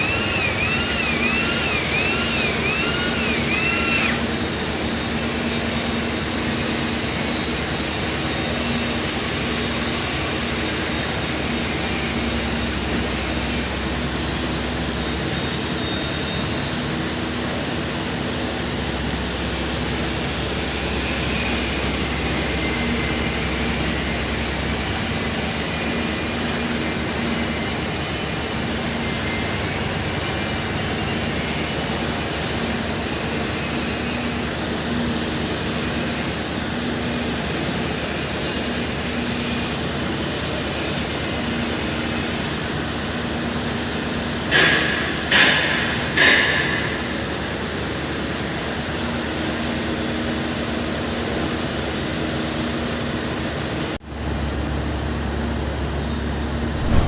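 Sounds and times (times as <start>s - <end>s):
machinery noise: 56.7s - 57.0s.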